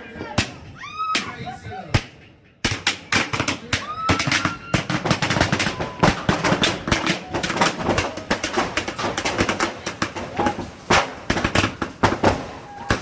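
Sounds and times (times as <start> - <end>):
firecrackers banging and crackling: 0.0 - 13.0.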